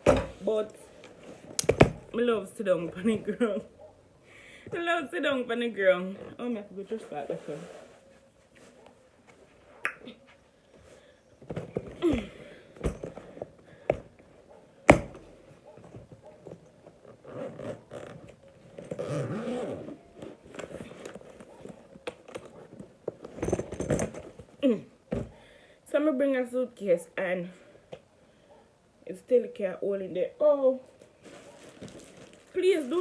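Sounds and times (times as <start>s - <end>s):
sharp knocks and thuds: 0.0s - 0.4s, 1.6s - 2.1s, 14.9s - 15.4s
bag rustling: 11.4s - 24.6s, 30.9s - 33.0s.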